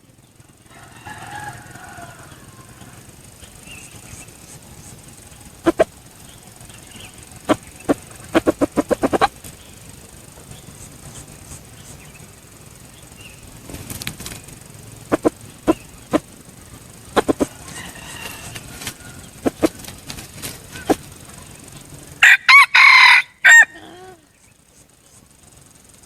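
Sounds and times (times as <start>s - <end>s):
faint bird chirps: 1.5s - 22.2s
rooster wings clapping: 6.6s - 12.2s, 13.5s - 16.3s, 17.1s - 21.8s.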